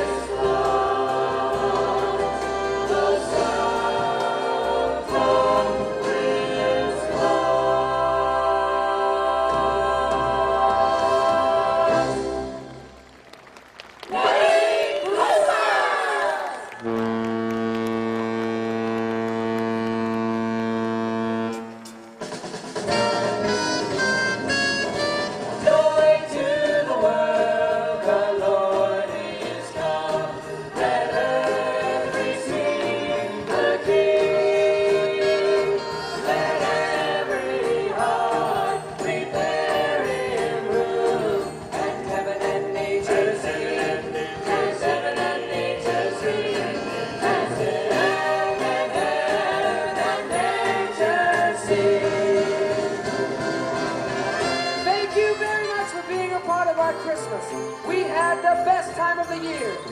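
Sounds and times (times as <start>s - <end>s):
choir singing: 0.0s - 12.7s, 14.1s - 16.7s, 25.6s - 54.5s
brass playing festive song: 0.0s - 13.0s, 16.8s - 59.9s
sleigh bells: 25.6s - 52.7s, 54.4s - 59.9s.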